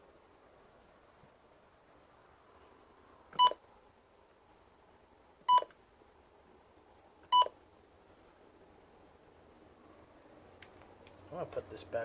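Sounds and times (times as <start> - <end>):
short electronic beeps: 3.4 - 3.6, 7.3 - 7.5.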